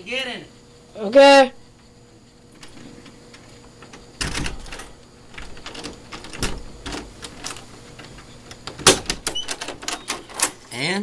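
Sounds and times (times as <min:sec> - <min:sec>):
doorknob lock clicking and rattling: 0:02.6 - 0:10.6.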